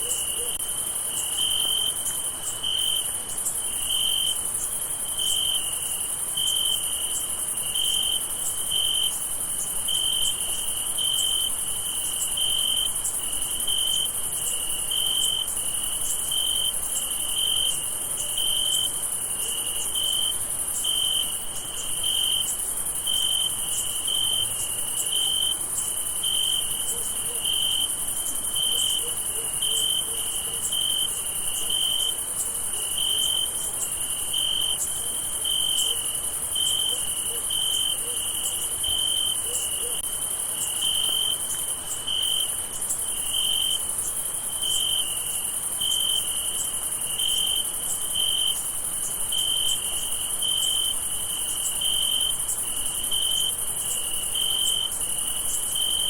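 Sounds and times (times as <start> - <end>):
cricket chirping: 0.0 - 56.0.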